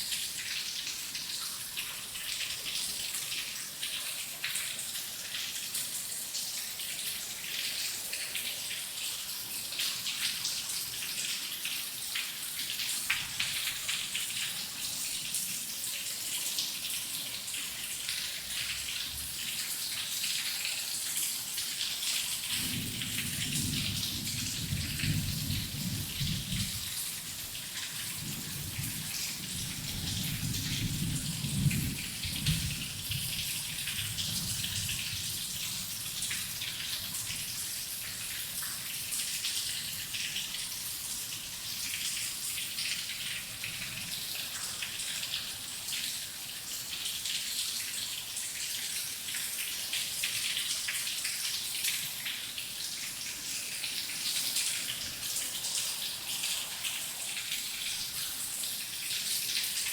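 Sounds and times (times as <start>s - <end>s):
heavy rain falling: 22.3s - 38.3s
low rumble of thunder: 22.5s - 36.0s.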